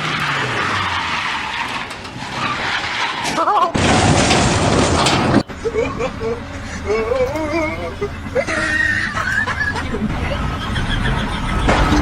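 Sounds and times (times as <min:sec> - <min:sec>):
laughter: 0:05.6 - 0:07.3, 0:08.0 - 0:12.0
people's voices: 0:06.0 - 0:09.2.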